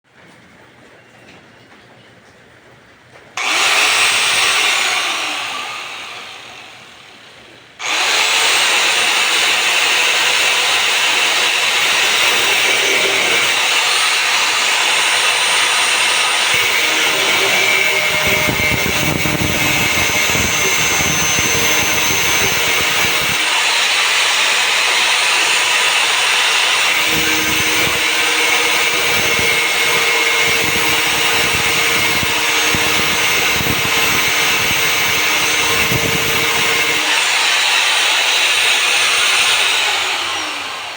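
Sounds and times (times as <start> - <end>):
angle grinder cutting metal: 3.4 - 6.9, 7.8 - 40.9.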